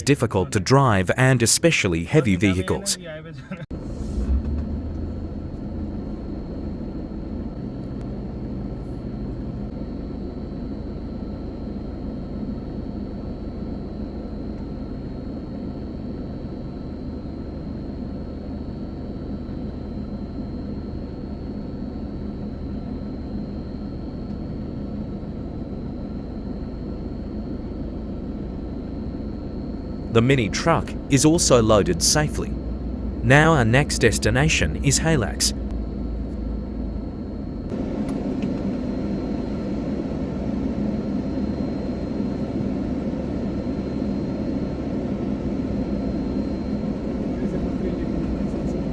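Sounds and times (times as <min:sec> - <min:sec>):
heavy vehicle engine running: 0:03.7 - 0:09.8, 0:24.2 - 0:41.5.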